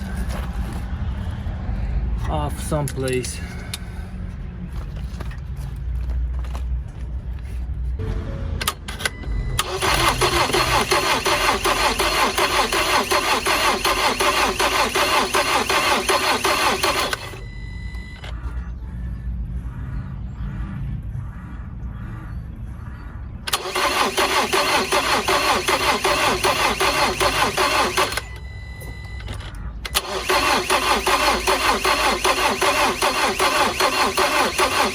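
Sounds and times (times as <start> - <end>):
engine cranking without starting: 8.6 - 17.5, 23.5 - 28.4, 29.3 - 34.9.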